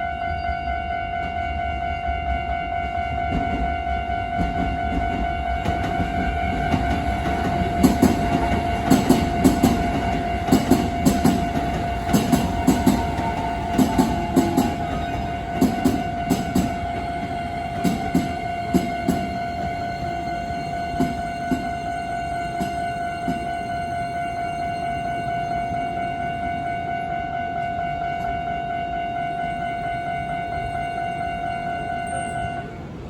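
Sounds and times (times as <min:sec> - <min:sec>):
train wheels clacking over rail joints: 0:03.2 - 0:24.0.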